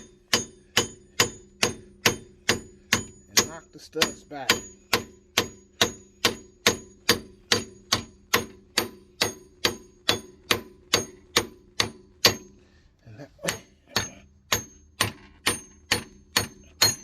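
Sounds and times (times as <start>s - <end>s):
hammer striking steel studs: 0.0s - 12.6s, 13.4s - 17.0s.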